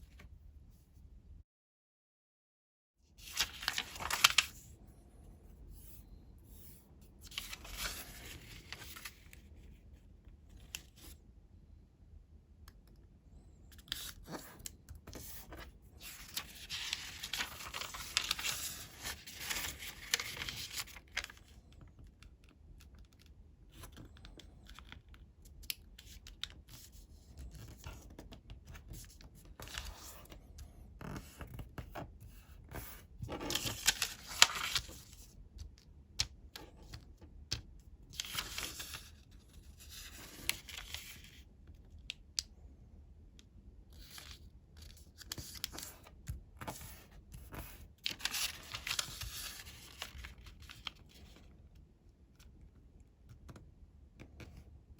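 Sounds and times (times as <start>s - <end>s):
paper rustling and crinkling: 3.2s - 4.7s, 5.7s - 9.6s, 13.8s - 21.9s, 26.5s - 30.4s, 32.7s - 35.3s, 36.8s - 41.4s, 44.0s - 51.5s
sharp paper crackle: 3.2s - 4.7s, 14.0s - 21.6s, 33.5s - 35.2s, 38.1s - 39.2s, 47.4s - 51.4s.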